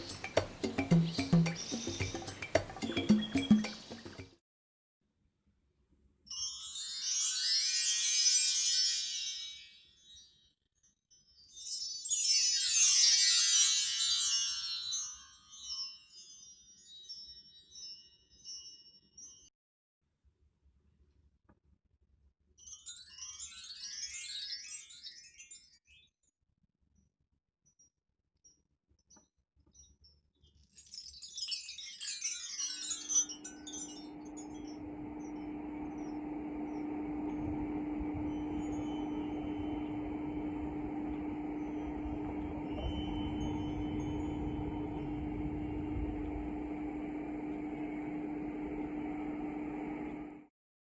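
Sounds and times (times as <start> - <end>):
mark tree chiming: 31.9 - 36.7, 37.4 - 46.6
steady low hum: 33.3 - 50.5.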